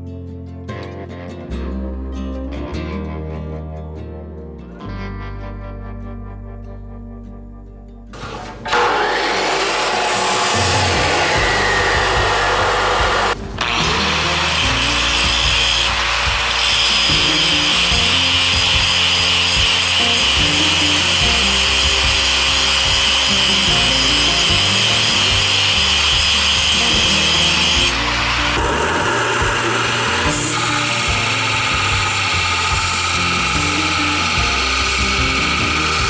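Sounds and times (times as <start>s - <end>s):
background music: 0.0s - 36.0s
power tool grinding steel: 8.2s - 36.0s.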